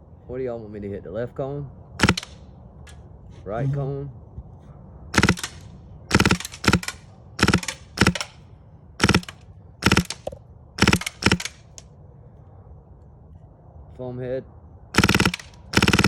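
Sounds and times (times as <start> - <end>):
airsoft gun firing bursts: 2.0 - 2.3, 5.2 - 8.4, 9.0 - 11.8, 15.0 - 16.0.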